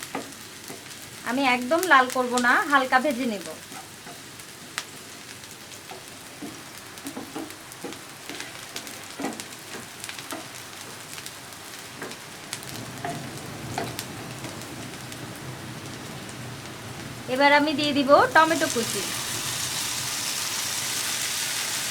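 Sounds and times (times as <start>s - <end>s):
onion sizzling in oil: 0.0s - 21.9s
spatula tapping and scraping: 5.9s - 10.6s.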